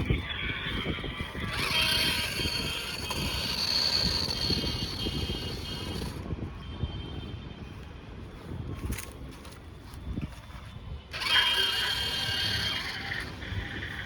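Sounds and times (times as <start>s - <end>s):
toy truck electric motor whining: 0.0s - 6.3s, 11.1s - 14.0s.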